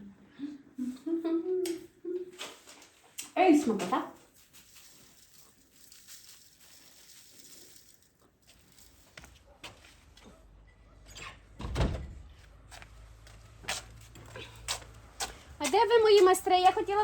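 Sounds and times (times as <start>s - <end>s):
faint rustling: 2.4s - 10.5s
door thudding shut: 11.6s - 12.3s.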